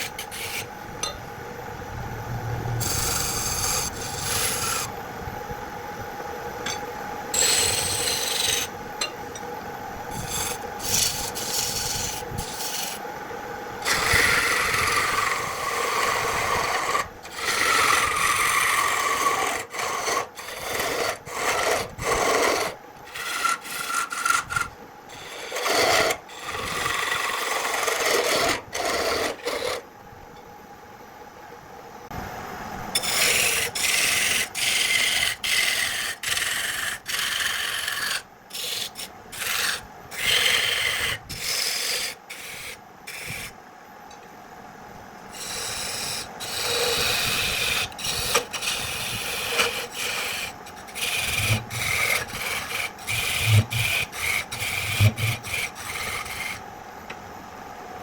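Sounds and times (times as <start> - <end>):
wood rasping and scraping: 10.1 - 13.0, 13.8 - 29.8, 33.0 - 43.5, 45.4 - 56.6.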